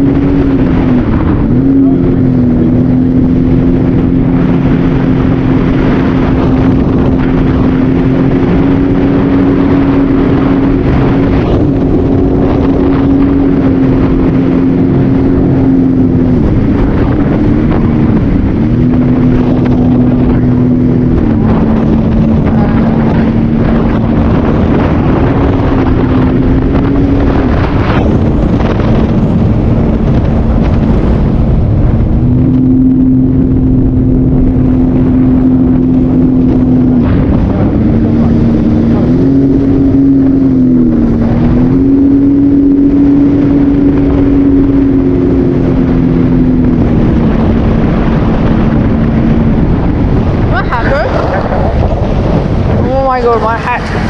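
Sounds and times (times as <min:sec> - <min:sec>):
jet ski engine running: 0:00.0 - 0:54.0
wind noise on microphone: 0:00.0 - 0:54.0.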